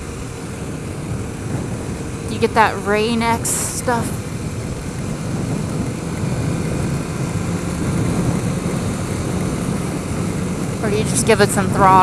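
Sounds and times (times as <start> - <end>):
motorcycle engine running: 0.0 - 12.0
wind rushing on microphone: 0.0 - 12.0.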